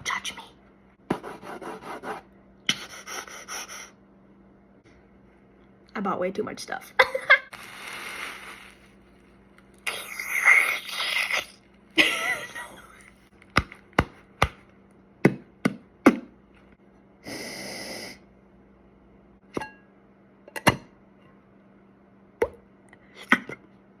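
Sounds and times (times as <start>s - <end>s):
hissing bursts: 7.5s - 8.8s.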